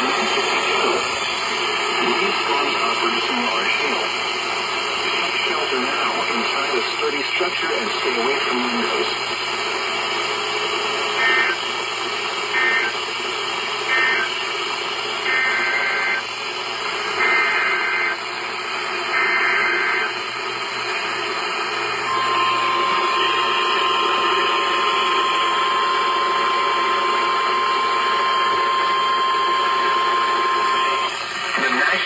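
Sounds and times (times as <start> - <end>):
radio receiver hiss: 0.0 - 32.0
steady warning alarm tone: 11.1 - 11.7, 12.5 - 13.0, 13.8 - 14.6, 15.2 - 16.4, 17.0 - 20.4, 21.9 - 31.3.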